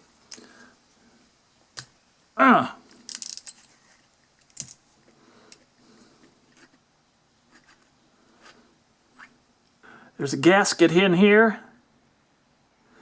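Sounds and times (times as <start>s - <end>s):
small metal parts clicking: 2.9s - 4.8s
handling noises on workbench: 3.0s - 4.8s.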